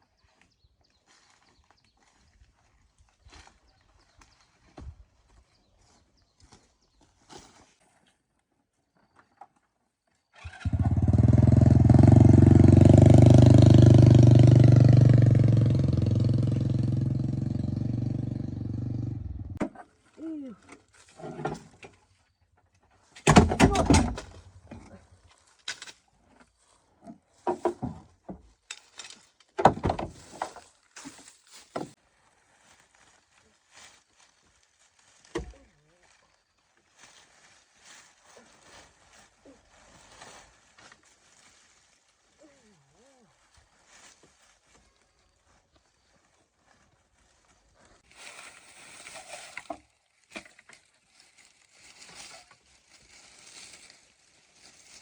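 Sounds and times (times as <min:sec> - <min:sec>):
engine running: 0:10.5 - 0:19.6.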